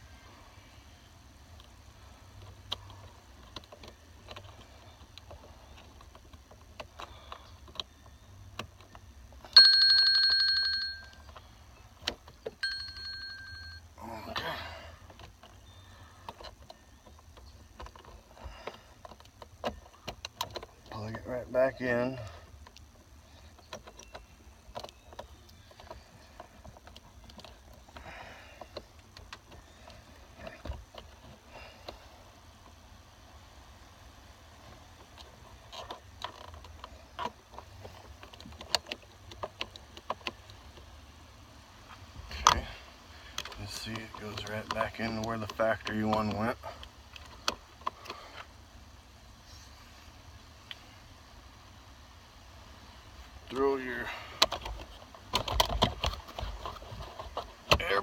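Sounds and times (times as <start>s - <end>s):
plastic parts clicking and knocking: 1.5s - 9.6s, 15.0s - 21.3s, 22.5s - 32.8s, 34.7s - 41.1s, 43.3s - 48.6s, 54.3s - 58.0s
loud ringing chime: 12.6s - 13.9s.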